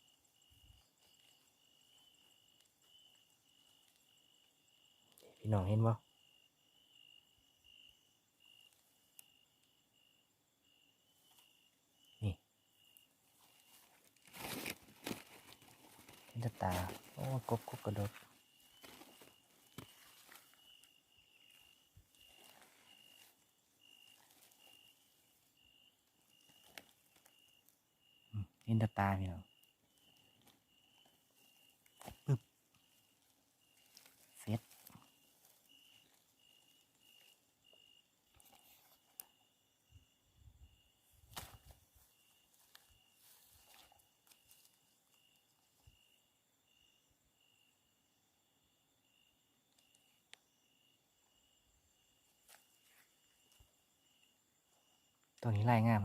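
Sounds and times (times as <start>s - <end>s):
insect chirping: 0.0s - 56.0s
rustling: 13.2s - 27.7s, 29.8s - 37.4s, 41.1s - 45.2s.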